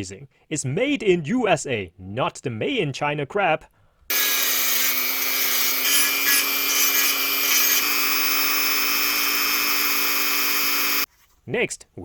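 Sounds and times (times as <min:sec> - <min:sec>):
rotary tool whining on wood: 0:04.1 - 0:11.1.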